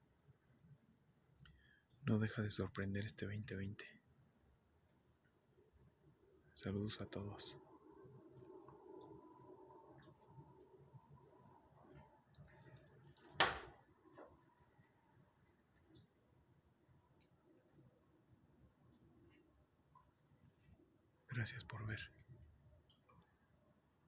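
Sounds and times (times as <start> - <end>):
crickets chirping: 0.0 - 24.0
sharp knock: 13.4 - 13.8.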